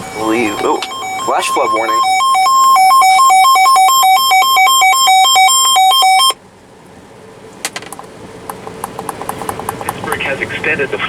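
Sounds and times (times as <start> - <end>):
buzzy two-pitch electronic alert tone: 0.0 - 5.4
faint clicks: 7.9 - 10.2.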